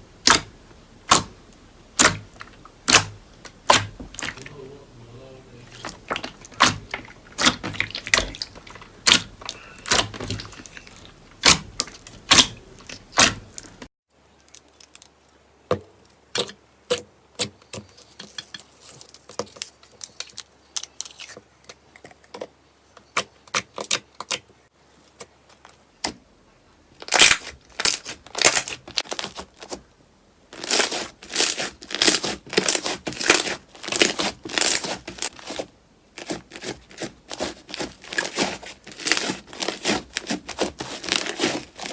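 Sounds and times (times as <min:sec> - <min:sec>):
slime crackling and popping: 0:00.2 - 0:01.3, 0:01.9 - 0:04.6, 0:05.7 - 0:13.9, 0:27.0 - 0:29.7, 0:30.6 - 0:35.6, 0:36.2 - 0:41.9.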